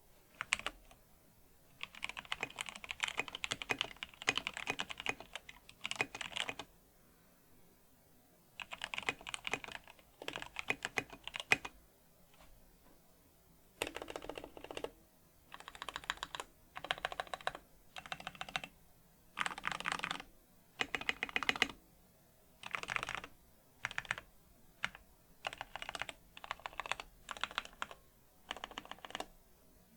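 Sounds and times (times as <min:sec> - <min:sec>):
mechanical keyboard typing: 0:00.3 - 0:01.0, 0:01.8 - 0:06.7, 0:08.6 - 0:11.7, 0:13.8 - 0:18.7, 0:19.4 - 0:21.8, 0:22.6 - 0:29.3.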